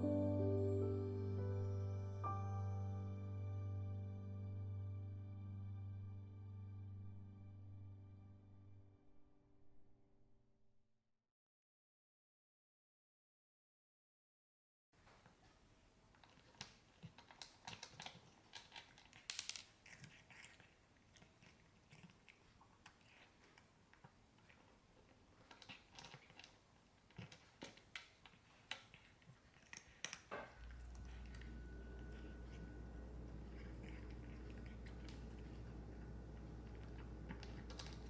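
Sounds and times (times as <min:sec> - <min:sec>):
cat chewing dry kibble: 0:16.1 - 0:38.0
steady low hum: 0:30.6 - 0:38.0.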